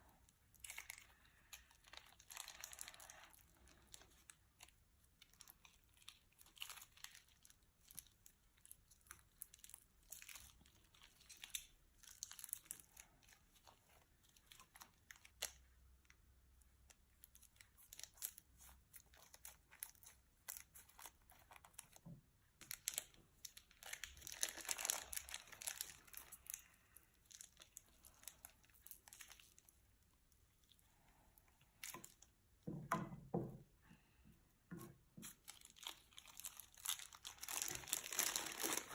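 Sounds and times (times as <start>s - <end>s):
plastic bag crinkling: 0.0s - 15.6s, 17.3s - 29.8s, 35.2s - 38.9s
slime crackling and popping: 0.1s - 16.2s, 16.8s - 29.8s, 35.2s - 38.9s.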